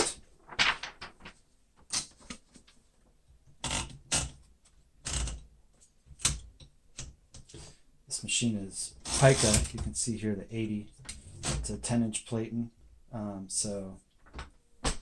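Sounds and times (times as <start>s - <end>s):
typewriter paper swishes and clunks: 0.0s - 1.4s.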